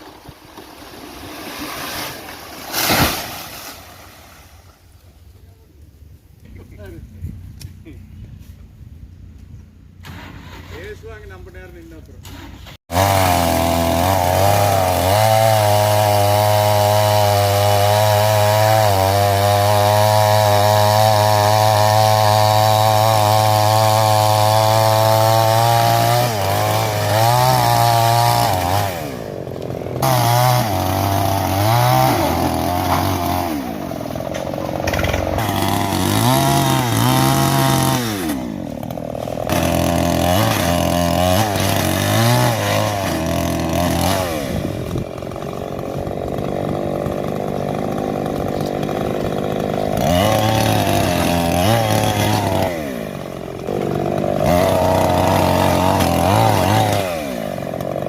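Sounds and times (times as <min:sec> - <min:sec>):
chainsaw revving: 0:12.3 - 0:58.0.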